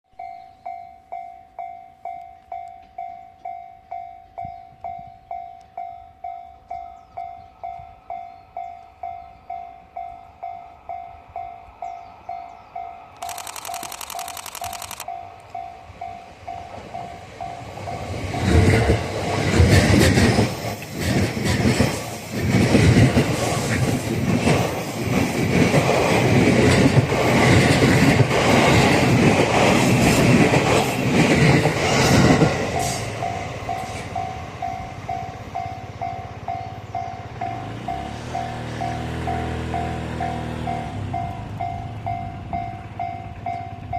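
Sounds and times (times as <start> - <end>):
train wheels clattering over rail joints: 18.3 - 33.2.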